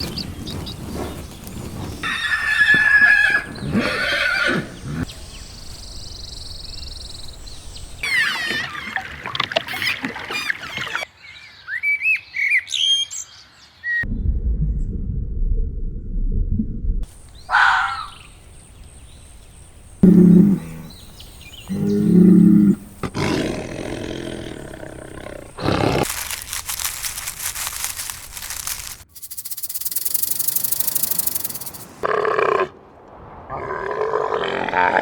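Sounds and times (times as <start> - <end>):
birds chirping and twittering: 0.0 - 9.0, 17.2 - 23.1
low rumbling: 14.1 - 17.1.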